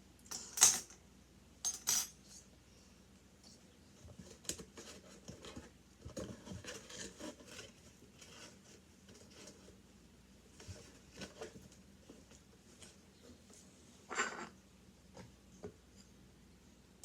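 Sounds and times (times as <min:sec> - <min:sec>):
utensils clinking: 0:00.3 - 0:01.0, 0:01.7 - 0:02.2.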